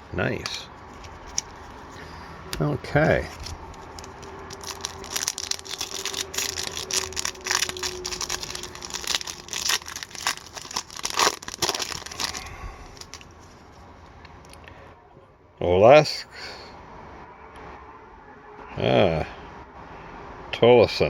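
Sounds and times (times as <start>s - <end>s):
wrapper tearing and crinkling: 3.3s - 13.4s.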